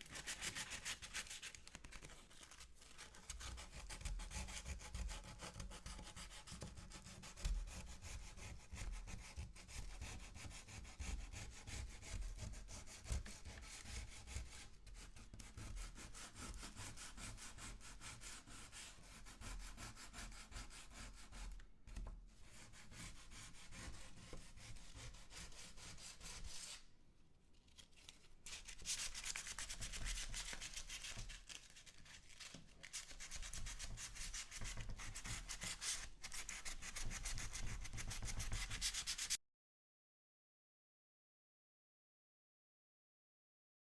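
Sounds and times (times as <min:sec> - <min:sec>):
sandpaper rubbing on wood: 0:33.5 - 0:39.4.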